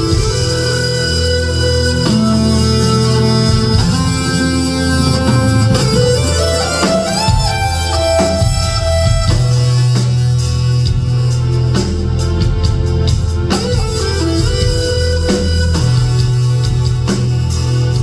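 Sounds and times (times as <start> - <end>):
guitar playing lead notes: 0.0 - 18.0
low drone: 0.0 - 18.0
drum hits: 3.6 - 9.6.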